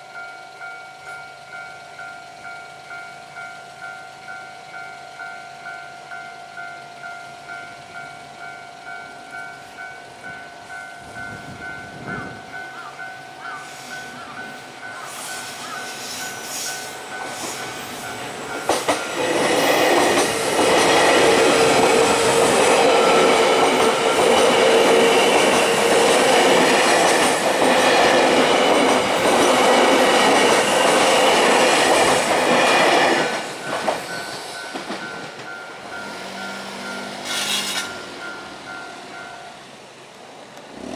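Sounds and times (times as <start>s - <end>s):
level-crossing alarm bell ringing: 0.0s - 40.0s
train rushing past: 10.2s - 40.9s.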